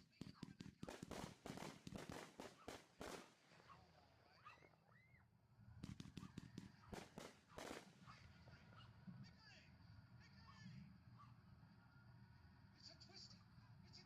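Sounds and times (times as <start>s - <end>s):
fireworks popping and banging: 0.0s - 3.7s, 5.8s - 8.1s.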